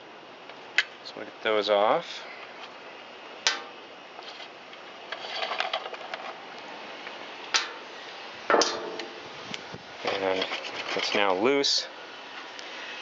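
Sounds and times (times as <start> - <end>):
rattling scrape of screws: 5.1 - 6.4.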